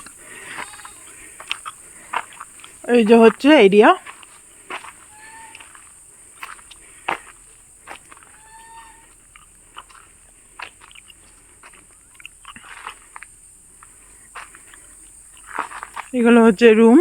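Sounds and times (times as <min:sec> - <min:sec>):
steady high-pitched hiss: 0:00.0 - 0:17.0
brief animal call: 0:00.4 - 0:01.1, 0:05.0 - 0:05.7, 0:08.2 - 0:09.2.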